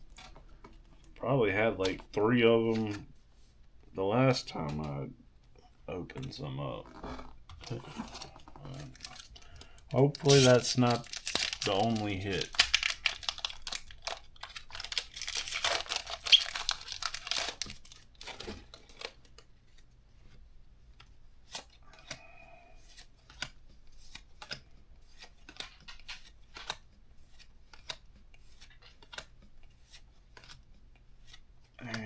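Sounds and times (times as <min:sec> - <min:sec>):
foil wrapper tearing and crinkling: 0:08.7 - 0:18.6
trading cards clicking: 0:08.7 - 0:19.2.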